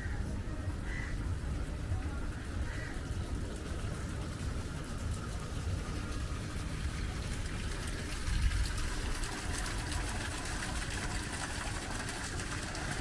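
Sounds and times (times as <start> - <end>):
faint voices: 0.0 - 3.9
wind buffeting microphone: 5.8 - 9.8.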